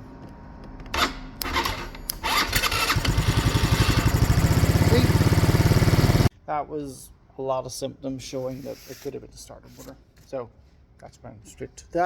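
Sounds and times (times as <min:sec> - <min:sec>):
scooter engine puttering: 0:00.9 - 0:06.3
electric starter cranking: 0:01.0 - 0:06.3.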